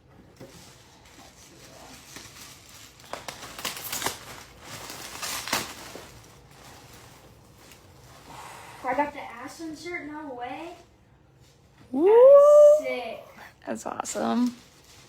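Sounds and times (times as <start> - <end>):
packaging crinkling and tearing: 0.5 - 8.3, 14.4 - 15.0.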